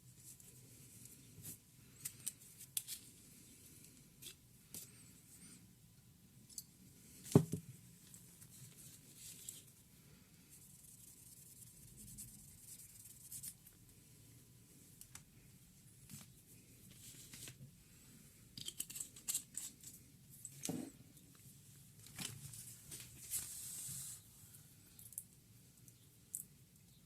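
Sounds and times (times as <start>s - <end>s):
small clicks and light scraping: 0.2s - 3.1s, 14.9s - 15.3s, 18.5s - 23.5s.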